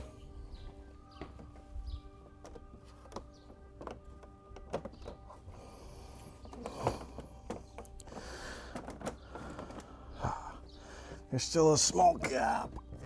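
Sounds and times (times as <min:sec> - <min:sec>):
plastic panels clicking and knocking: 0:01.1 - 0:11.3, 0:12.1 - 0:13.0
plastic scraping rustles: 0:01.2 - 0:05.6, 0:06.3 - 0:11.3.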